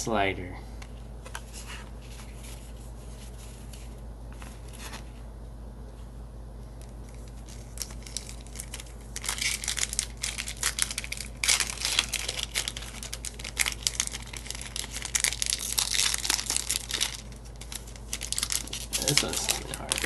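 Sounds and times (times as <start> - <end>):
foil wrapper crinkling and tearing: 6.8 - 20.0.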